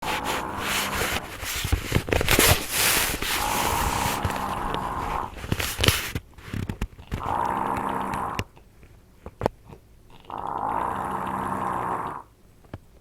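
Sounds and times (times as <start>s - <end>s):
woman snoring: 0.0s - 1.4s, 2.8s - 5.4s, 7.2s - 8.5s, 10.2s - 12.3s
clicks and scrapes: 0.0s - 7.3s.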